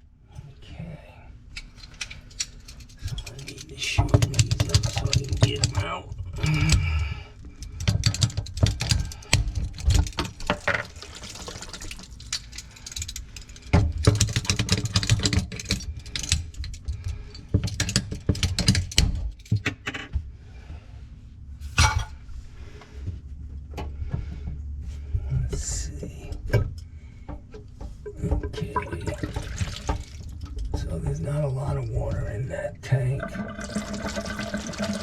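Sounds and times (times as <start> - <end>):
tools and metal fittings clinking: 1.6 - 5.8, 7.6 - 20.0, 21.8 - 22.2
water running: 3.1 - 7.2, 9.1 - 13.0, 28.0 - 32.2, 32.8 - 35.0.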